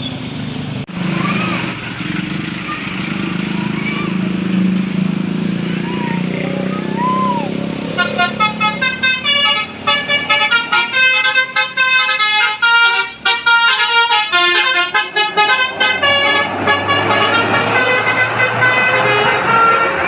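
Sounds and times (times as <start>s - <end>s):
bus horn playing a tune: 7.8s - 20.0s.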